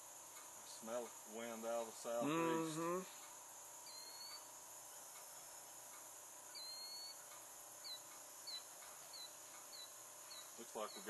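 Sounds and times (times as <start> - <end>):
faint insect drone: 0.0 - 11.0
bird calling: 3.8 - 4.5, 6.5 - 11.0.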